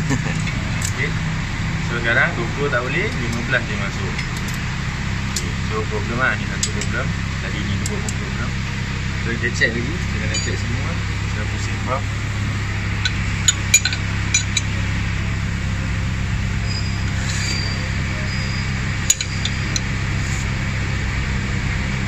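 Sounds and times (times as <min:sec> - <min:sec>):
steady low hum: 0:00.0 - 0:22.0
metal tools clinking on engine: 0:03.1 - 0:04.7, 0:06.5 - 0:07.1, 0:10.2 - 0:11.0, 0:13.0 - 0:14.8, 0:18.3 - 0:19.9.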